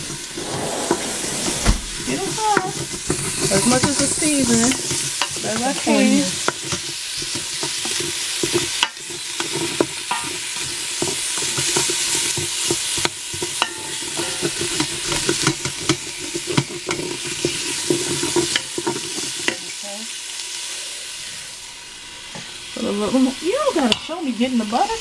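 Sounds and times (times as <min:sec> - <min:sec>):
utensil scraping a pot: 0:00.0 - 0:08.7
onions sizzling in a pot: 0:02.0 - 0:25.0.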